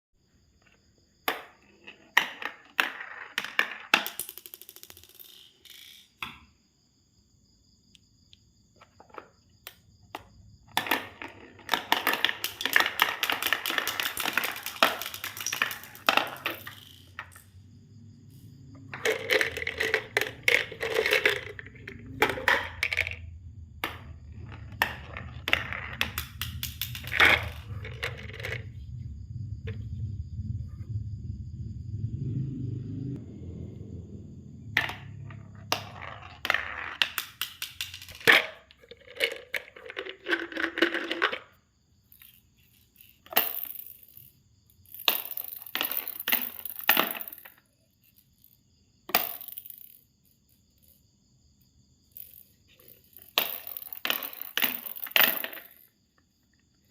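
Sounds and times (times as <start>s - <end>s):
marbles clacking down a marble run: 2.2s - 6.3s, 10.2s - 17.6s, 18.9s - 28.7s, 34.8s - 41.5s, 52.1s - 55.9s
low hum: 21.4s - 35.6s.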